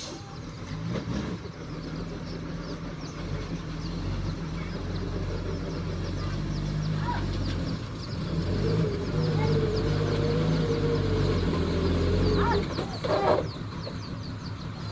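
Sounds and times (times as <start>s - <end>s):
heavy diesel engine running: 0.0s - 14.9s.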